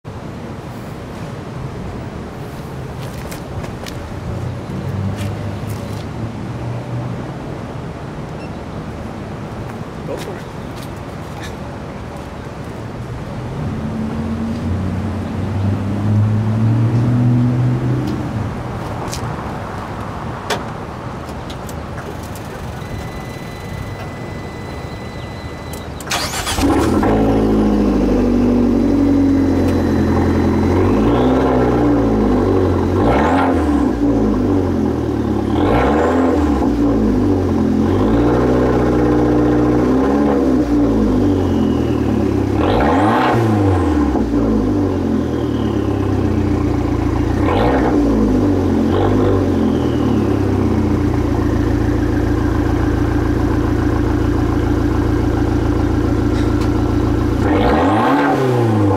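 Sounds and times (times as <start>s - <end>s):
car engine starting and revving: 13.6s - 18.7s, 25.6s - 58.9s.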